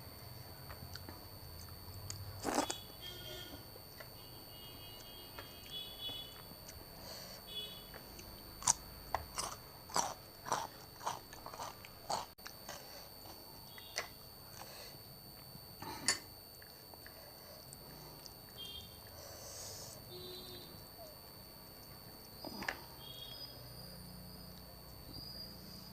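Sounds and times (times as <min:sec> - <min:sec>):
crunchy bites and chewing: 0:00.8 - 0:04.1, 0:07.9 - 0:14.8.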